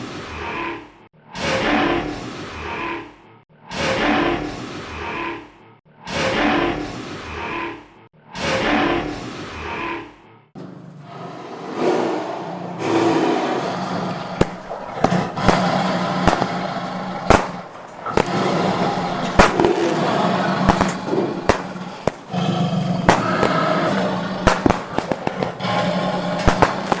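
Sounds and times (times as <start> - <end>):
fireworks bangs: 14.3 - 25.8, 26.4 - 27.0.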